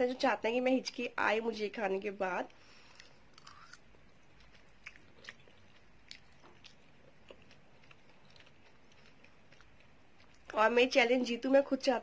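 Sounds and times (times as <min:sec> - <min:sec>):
chewing noodles: 0:02.8 - 0:10.6.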